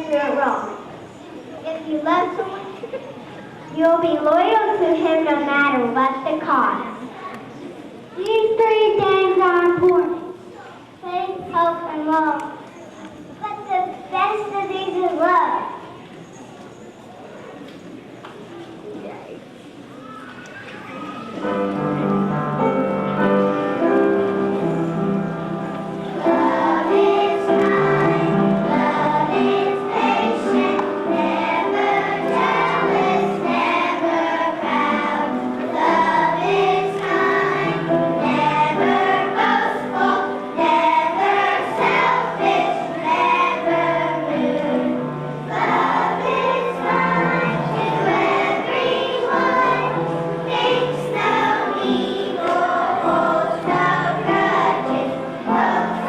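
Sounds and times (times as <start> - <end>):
musical accompaniment: 21.2 - 56.0
choir singing: 25.9 - 56.0.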